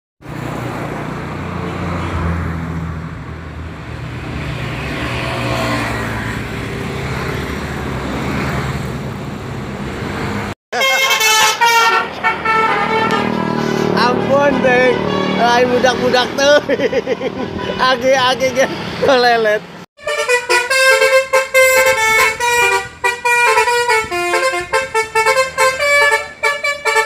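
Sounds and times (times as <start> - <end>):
traffic noise: 0.2 - 27.0
multi-tone bus horn tune: 10.7 - 17.9, 20.0 - 27.0
heavy vehicle engine running: 12.0 - 15.8.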